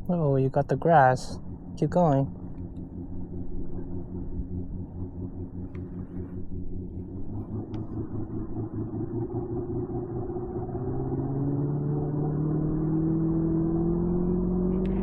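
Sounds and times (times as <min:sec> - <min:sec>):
engine humming: 0:00.0 - 0:15.0.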